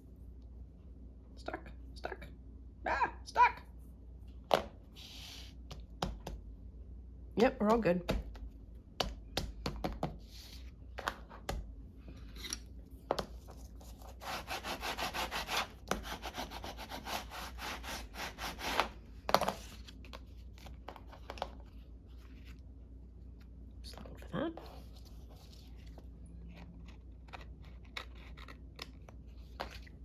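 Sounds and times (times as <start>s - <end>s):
hand rubbing paper: 13.4s - 19.0s.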